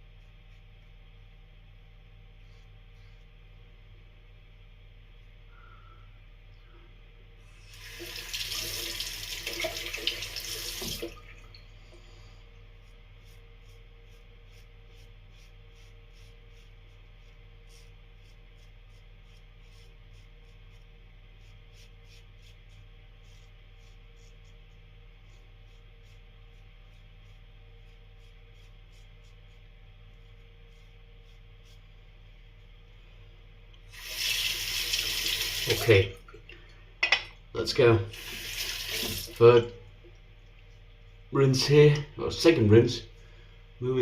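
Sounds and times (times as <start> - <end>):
faint steady hum: 0.0 - 44.0
tap running into a sink: 8.5 - 11.2.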